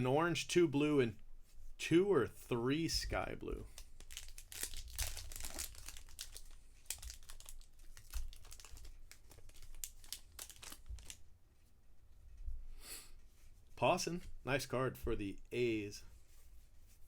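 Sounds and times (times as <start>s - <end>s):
cards rustling: 3.7s - 11.2s
foil wrappers crinkling: 3.7s - 11.2s.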